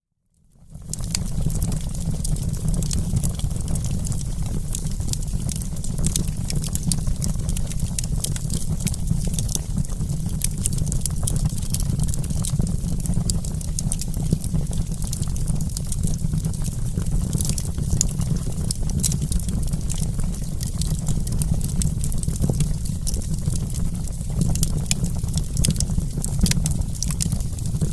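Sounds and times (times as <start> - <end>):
burning wood crackling and popping: 0.6 - 27.9
campfire flames rumbling: 0.6 - 27.9.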